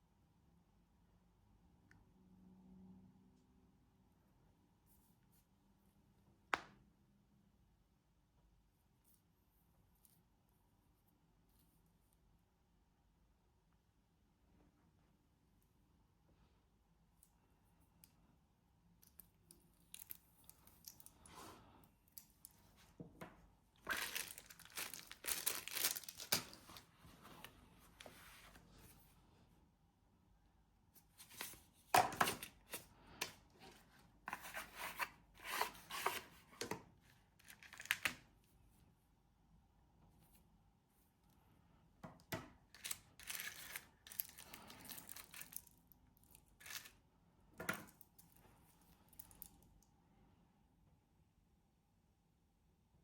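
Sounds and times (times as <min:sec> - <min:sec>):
crinkling and rustling handling noise: 0:19.0 - 0:29.5, 0:31.0 - 0:38.8, 0:42.1 - 0:49.8.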